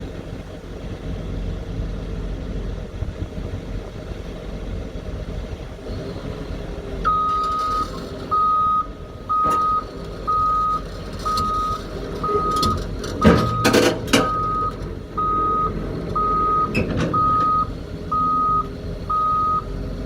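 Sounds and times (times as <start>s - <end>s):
diesel engine rumble: 0.0s - 20.0s
reversing alarm beeping: 7.0s - 19.7s.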